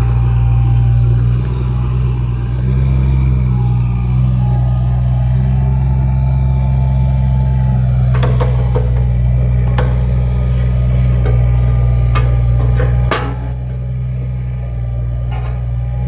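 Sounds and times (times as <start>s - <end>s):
excavator diesel engine running: 0.0s - 16.0s
sharp machine knocks: 8.2s - 14.0s.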